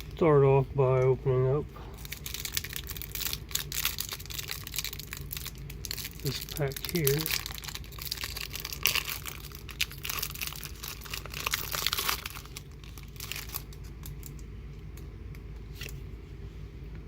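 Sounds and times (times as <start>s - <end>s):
foil pack tearing and crinkling: 1.9s - 14.3s.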